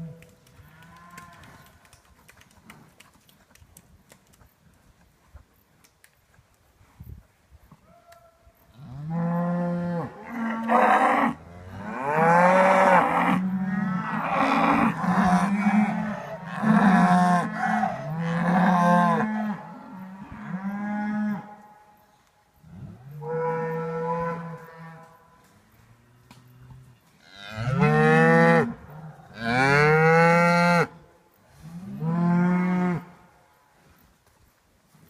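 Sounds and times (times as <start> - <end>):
cows mooing: 8.8 - 21.5.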